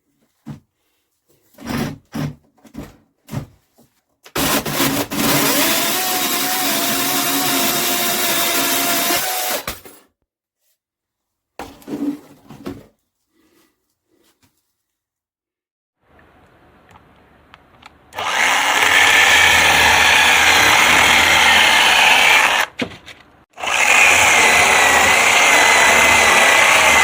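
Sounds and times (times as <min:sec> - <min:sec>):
electric chainsaw whine: 0:05.3 - 0:09.7, 0:18.2 - 0:22.8, 0:23.6 - 0:27.0.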